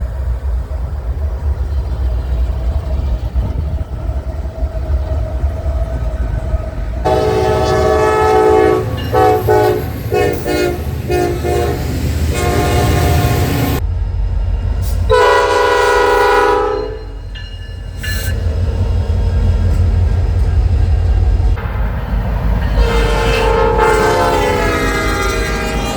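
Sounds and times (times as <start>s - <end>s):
low train rumble: 0.0s - 25.9s
locomotive air horn blasts: 7.0s - 13.8s, 15.0s - 17.1s, 22.7s - 25.9s.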